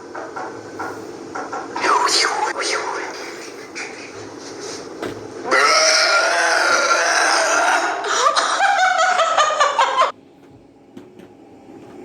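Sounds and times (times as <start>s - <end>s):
woman belching loudly: 5.5s - 8.0s.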